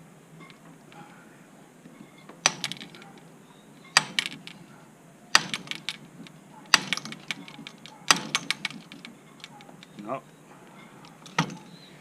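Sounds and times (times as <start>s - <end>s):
metallic rattle: 1.9s - 4.7s, 5.3s - 10.1s, 10.7s - 11.8s.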